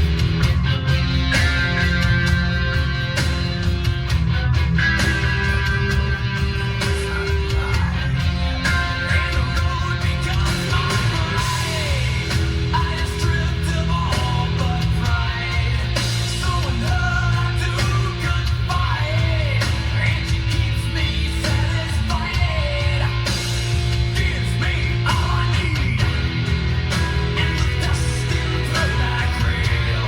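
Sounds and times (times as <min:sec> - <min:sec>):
song with heavy bass: 0:00.0 - 0:30.0.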